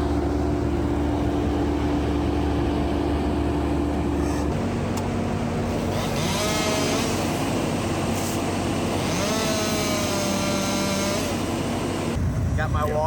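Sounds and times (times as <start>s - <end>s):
heavy machine engine running: 0.0s - 12.7s
saw revving to high whine: 5.7s - 12.2s.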